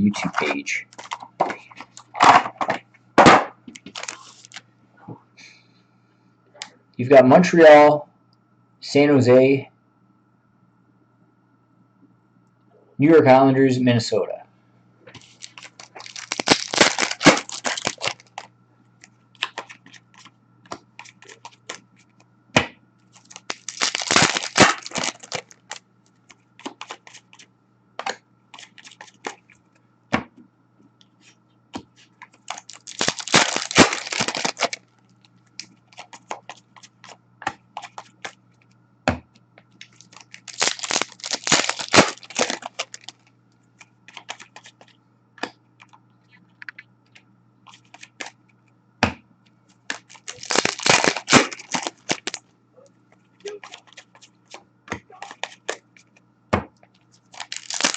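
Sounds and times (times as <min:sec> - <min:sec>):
faint steady hum: 0:00.0 - 0:57.9
wrapper tearing: 0:03.9 - 0:04.6, 0:15.2 - 0:18.5, 0:23.2 - 0:27.4, 0:32.4 - 0:34.9, 0:39.8 - 0:43.2, 0:49.9 - 0:52.4, 0:57.2 - 0:57.9.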